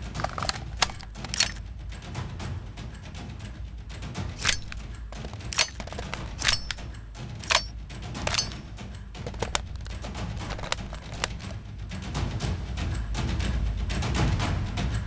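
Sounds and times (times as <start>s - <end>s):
metallic gun clacks: 0.0s - 1.6s, 4.4s - 6.8s, 7.4s - 8.7s, 9.3s - 11.6s
light clicks and ticks: 0.1s - 1.6s, 4.4s - 6.8s, 7.4s - 7.7s, 8.3s - 8.6s.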